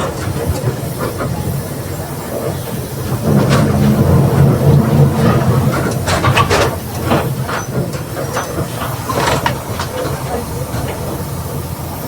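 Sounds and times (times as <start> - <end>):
bus engine running: 0.0 - 12.0
low growl from differential: 3.1 - 7.9
clattering knocks: 3.1 - 9.6.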